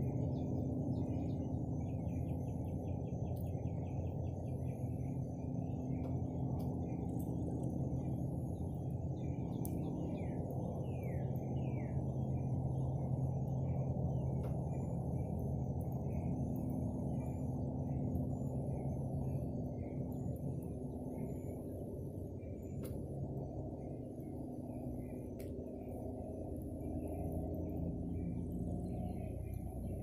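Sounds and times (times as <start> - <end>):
faint bird chirps: 0.0 - 30.0
low outdoor hum and rumble: 0.0 - 30.0
faint clicks: 5.9 - 7.8, 9.5 - 10.6, 22.6 - 23.1, 25.3 - 26.0.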